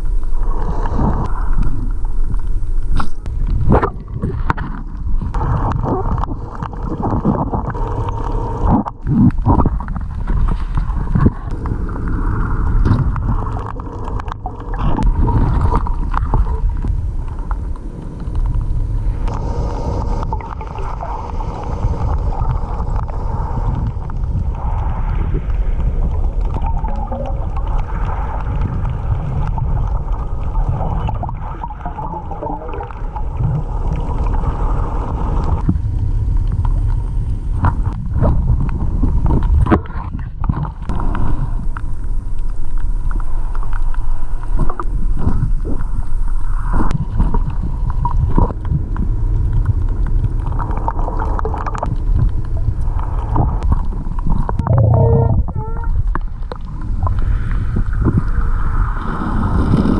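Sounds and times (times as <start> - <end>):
underwater surge rumble: 0.0 - 59.9
water gurgling: 0.0 - 59.9
underwater clicks and knocks: 35.6 - 45.9, 46.8 - 57.3
short warbling tone: 54.6 - 56.0.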